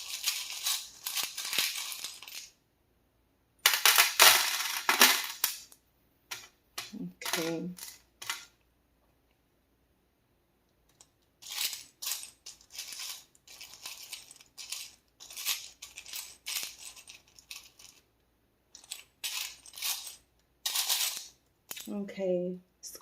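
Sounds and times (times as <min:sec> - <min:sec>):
small charms clinking: 0:00.0 - 0:02.5, 0:10.9 - 0:18.1, 0:18.8 - 0:21.9.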